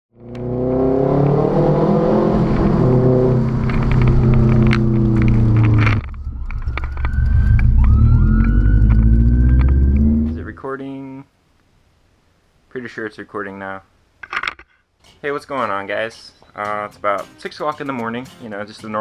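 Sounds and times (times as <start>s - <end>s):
loud car exhaust: 0.3s - 10.5s
exhaust crackles: 1.2s - 10.6s.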